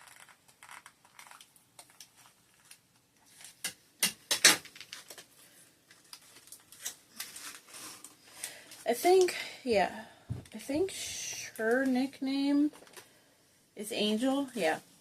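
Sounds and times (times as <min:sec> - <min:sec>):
plastic clicks and rustles: 0:00.0 - 0:09.3, 0:12.7 - 0:13.1.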